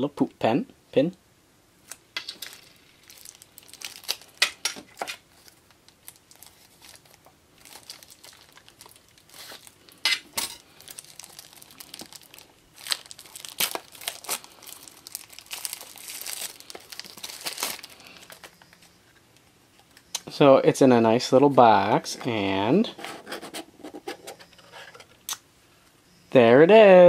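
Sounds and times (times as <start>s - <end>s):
packaging crinkling and rustling: 1.9s - 19.0s.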